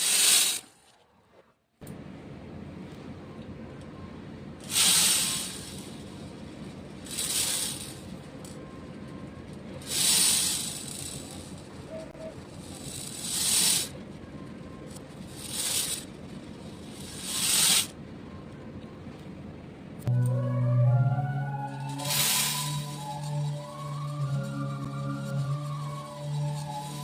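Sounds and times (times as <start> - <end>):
beads being poured: 22.0 - 24.5.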